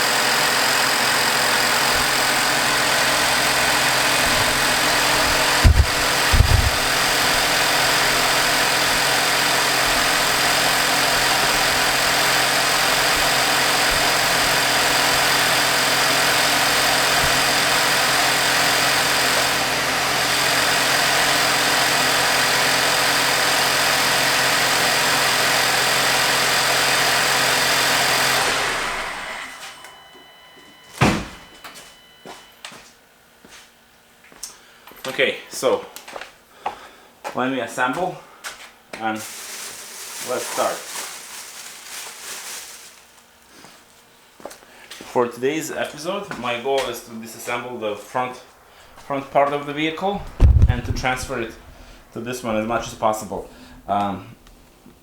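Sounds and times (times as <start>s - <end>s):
car engine idling: 0.0s - 24.1s, 48.6s - 54.7s
sharp knock: 50.2s - 51.4s.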